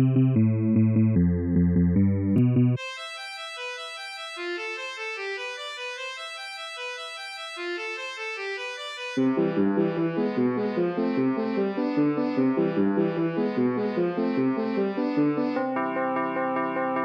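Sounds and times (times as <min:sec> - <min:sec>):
lower instrumental part: 0:00.0 - 0:16.5
reedy accordion-like melody: 0:02.8 - 0:15.8.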